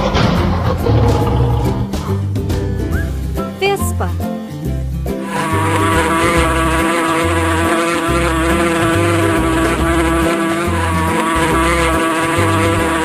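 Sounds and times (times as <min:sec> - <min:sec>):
background music with bass: 0:00.0 - 0:13.0
wasp buzzing: 0:05.2 - 0:13.0.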